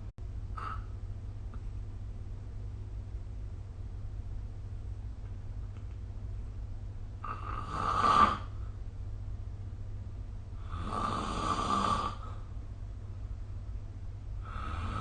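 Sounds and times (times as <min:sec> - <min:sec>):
steady low hum: 0:00.0 - 0:15.0
person snoring: 0:07.2 - 0:08.6, 0:10.6 - 0:12.4, 0:14.4 - 0:15.0.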